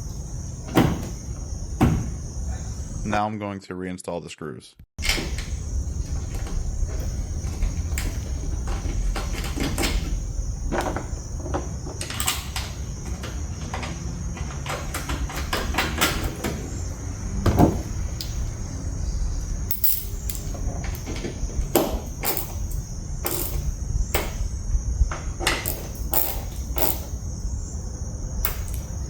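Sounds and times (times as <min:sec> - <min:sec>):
hand tool driving screws: 0:21.8 - 0:24.4, 0:25.4 - 0:27.2.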